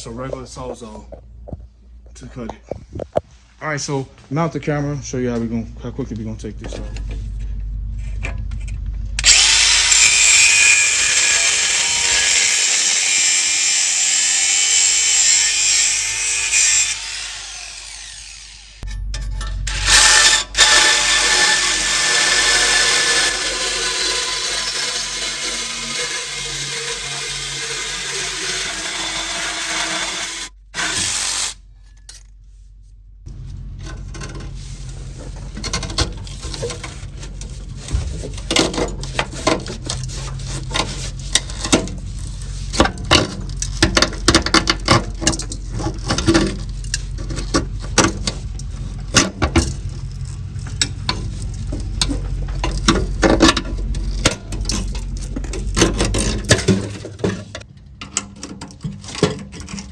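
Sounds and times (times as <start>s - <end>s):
angle grinder cutting steel pipe: 9.2s - 31.6s
power tool humming: 9.2s - 31.6s.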